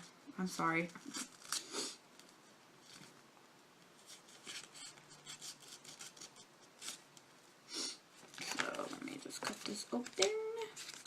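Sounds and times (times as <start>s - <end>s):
paper envelope rustling and scraping: 4.0s - 7.1s, 8.2s - 11.0s.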